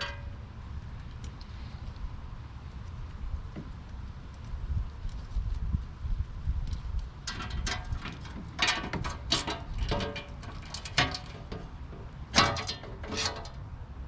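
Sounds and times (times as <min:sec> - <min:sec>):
metallic clanks: 0:00.0 - 0:00.4, 0:07.3 - 0:13.6.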